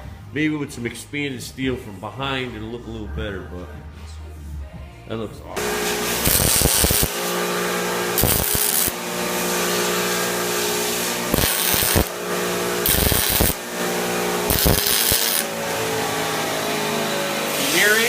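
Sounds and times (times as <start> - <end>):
tack welding bursts: 5.6 - 15.7.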